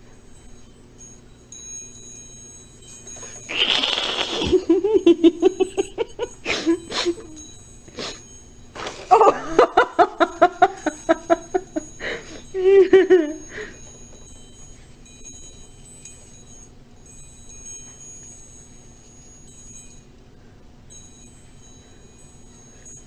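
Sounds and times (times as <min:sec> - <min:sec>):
baby laughing: 0:03.5 - 0:07.3.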